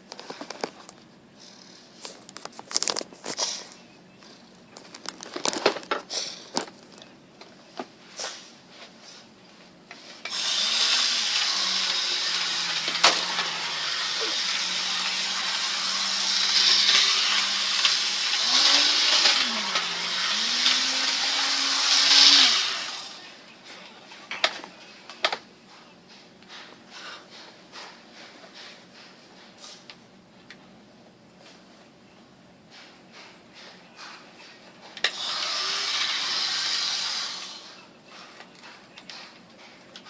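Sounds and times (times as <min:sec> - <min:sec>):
small motor hissing and humming: 0:10.2 - 0:23.4, 0:35.0 - 0:37.9.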